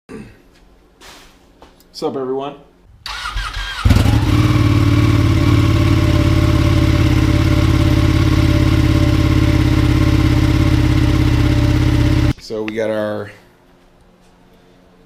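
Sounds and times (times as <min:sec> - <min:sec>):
motorcycle engine idling: 0:03.8 - 0:12.3.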